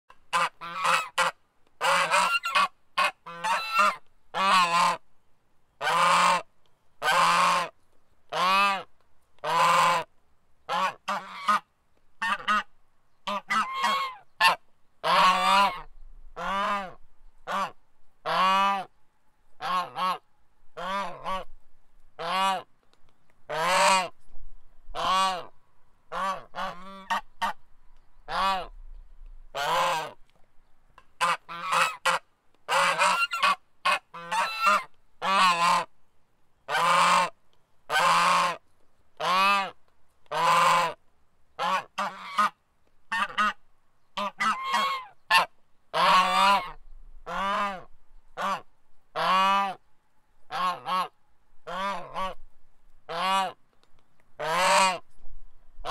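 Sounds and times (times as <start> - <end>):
goose honking: 0.3 - 5.0, 5.8 - 7.7, 8.3 - 10.1, 10.7 - 11.6, 12.2 - 18.9, 19.6 - 20.2, 20.8 - 21.5, 22.2 - 22.7, 23.5 - 24.1, 25.0 - 25.5, 26.1 - 27.6, 29.6 - 30.2, 31.2 - 35.9, 36.7 - 37.3, 37.9 - 38.6, 39.2 - 41.0, 41.6 - 43.6, 44.2 - 49.8, 50.5 - 52.4, 53.1 - 53.6, 54.4 - 55.0.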